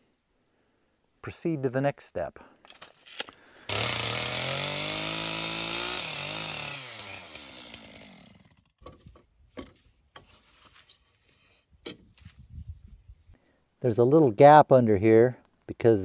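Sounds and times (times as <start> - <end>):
chainsaw cutting board: 3.0 - 9.8
wood knocks and clicks: 8.8 - 10.3.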